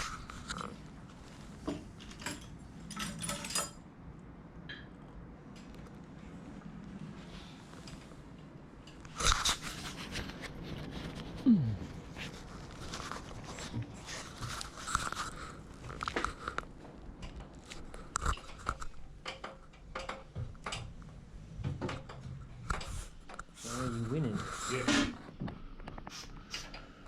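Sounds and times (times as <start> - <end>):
knocks and clatter of handling: 1.3 - 3.9, 12.2 - 23.6.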